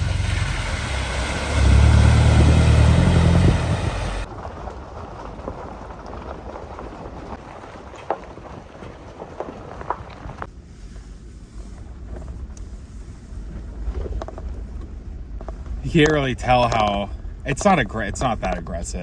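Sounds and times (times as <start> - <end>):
engine running under load: 0.0 - 4.9
wind: 0.0 - 19.0.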